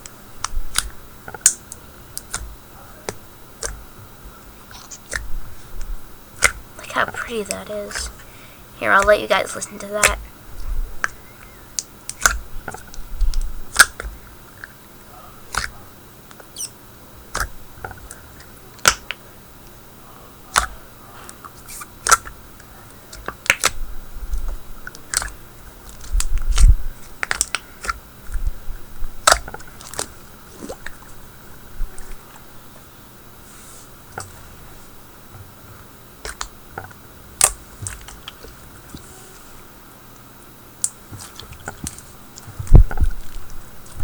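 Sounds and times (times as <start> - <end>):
slime clicking pops: 0.4 - 2.5, 6.4 - 6.6, 11.8 - 14.7, 15.5 - 15.7, 18.8 - 19.2, 22.0 - 22.3, 23.2 - 23.8, 26.1 - 28.0, 29.2 - 30.1, 36.3 - 36.5, 37.4 - 38.4
soft low squishes: 33.4 - 39.6, 40.8 - 44.0.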